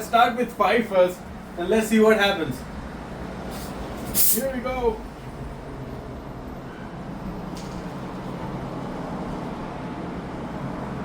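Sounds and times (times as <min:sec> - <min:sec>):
low background rumble: 0:00.0 - 0:11.0.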